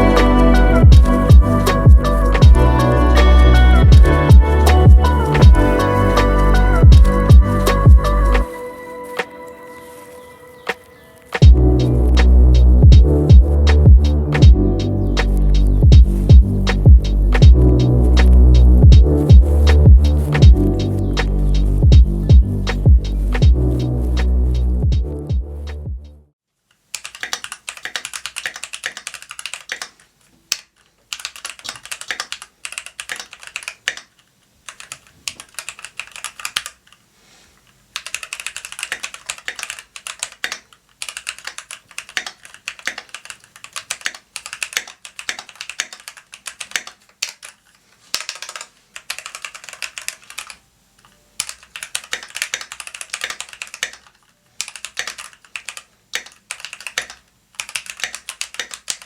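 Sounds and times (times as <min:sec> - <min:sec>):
mechanical keyboard key clacks: 0:27.0 - 0:34.1, 0:38.0 - 0:50.6, 0:51.4 - 0:59.0.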